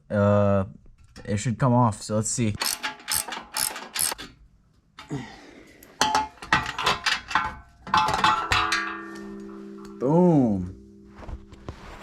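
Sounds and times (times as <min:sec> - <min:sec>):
metal exhaust clinking and clanking: 0:06.0 - 0:10.1.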